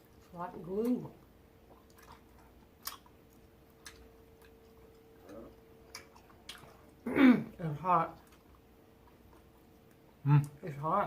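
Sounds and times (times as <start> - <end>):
faint steady hum: 0.0 - 11.0
chewing sticky candy: 1.6 - 7.0.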